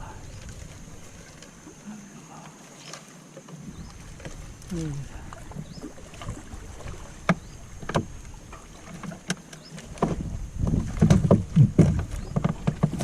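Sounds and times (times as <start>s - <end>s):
knocks and bumps in a boat: 2.8s - 13.0s.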